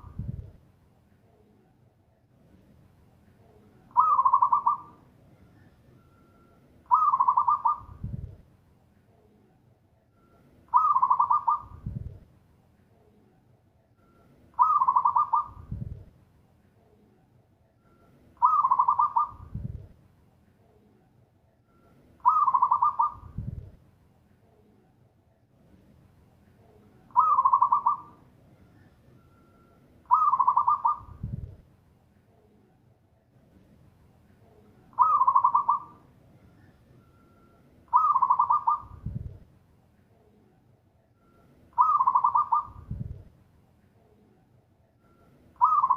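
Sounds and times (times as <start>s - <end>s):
dove cooing song: 3.9s - 5.0s, 6.9s - 8.2s, 10.7s - 12.1s, 14.6s - 15.9s, 18.4s - 19.8s, 22.2s - 23.6s, 27.1s - 28.9s, 30.0s - 31.5s, 34.9s - 36.0s, 37.9s - 39.3s, 41.8s - 43.2s, 45.6s - 45.9s.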